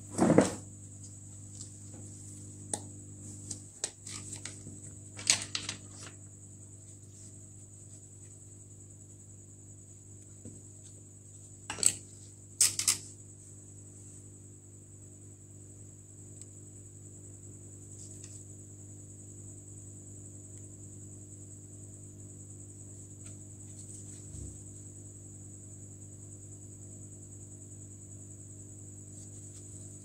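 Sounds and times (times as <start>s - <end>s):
hot-air station humming and whining: 0.0s - 8.4s.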